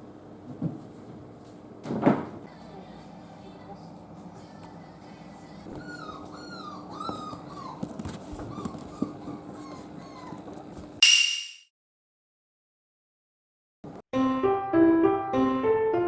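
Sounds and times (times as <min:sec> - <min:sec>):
puppies whimpering: 0:04.8 - 0:11.0.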